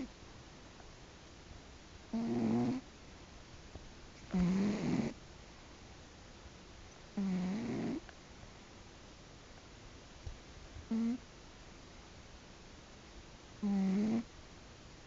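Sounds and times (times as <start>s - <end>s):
buzzing snores: 2.1s - 2.8s, 4.3s - 5.2s, 7.2s - 8.0s, 10.9s - 11.2s, 13.6s - 14.3s.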